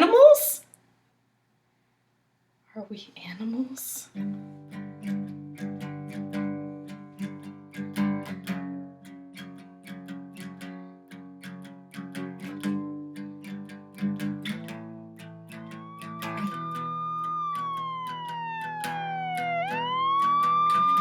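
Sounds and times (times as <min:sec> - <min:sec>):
guitar plucking chords: 0:04.2 - 0:21.0.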